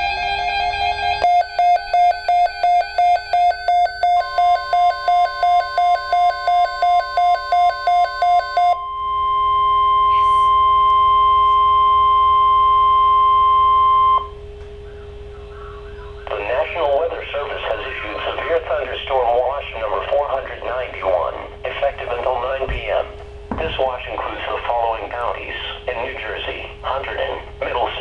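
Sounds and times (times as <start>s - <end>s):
steady alarm tone: 0.0s - 26.5s
rapid electronic beeping: 0.1s - 8.9s.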